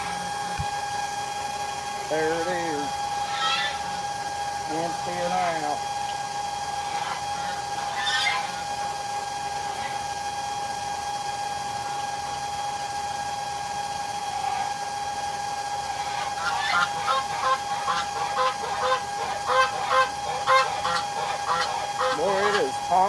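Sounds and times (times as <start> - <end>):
small pump humming: 0.0 - 23.0
geese honking: 2.2 - 4.0, 4.8 - 5.8, 6.8 - 8.6, 16.0 - 23.0.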